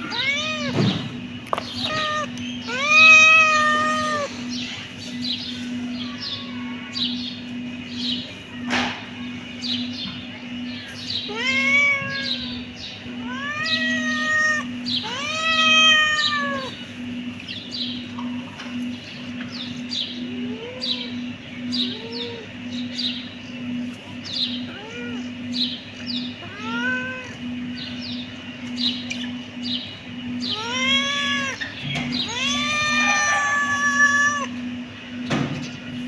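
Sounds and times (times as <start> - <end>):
kitten meowing: 0.0 - 1.0, 1.7 - 4.4, 11.3 - 12.6, 13.2 - 16.7, 26.4 - 27.4, 30.5 - 34.6
steady low hum: 0.0 - 36.0.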